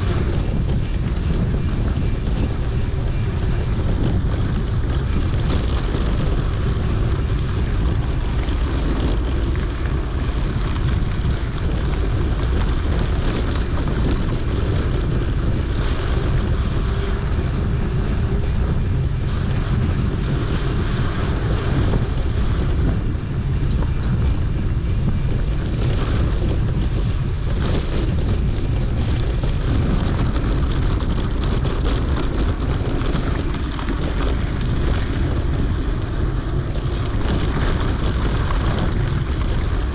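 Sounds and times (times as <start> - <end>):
tyres rumbling on dirt trail: 0.0 - 39.9
wind buffeting microphone: 0.0 - 39.9
small clicks and rattles: 25.7 - 39.9.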